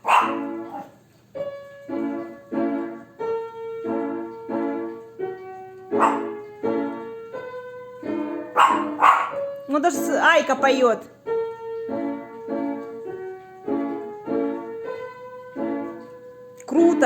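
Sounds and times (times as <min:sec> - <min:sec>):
dog barking: 0:00.0 - 0:01.0, 0:05.9 - 0:06.5, 0:08.4 - 0:09.5
slow piano playing: 0:00.0 - 0:17.0.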